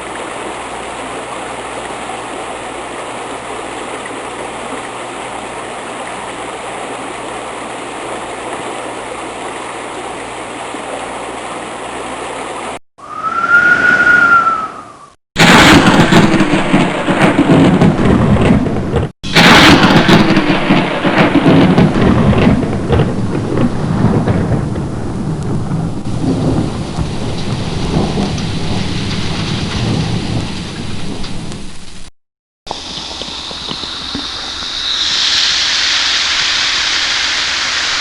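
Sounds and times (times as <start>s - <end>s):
rain: 0.0s - 12.8s, 15.4s - 32.1s, 32.7s - 38.0s
rolling thunder: 15.4s - 31.8s.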